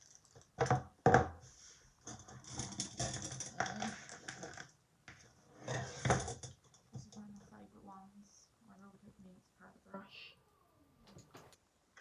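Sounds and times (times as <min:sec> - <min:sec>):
makeup brushes clattering: 0:02.0 - 0:04.7, 0:05.6 - 0:07.4.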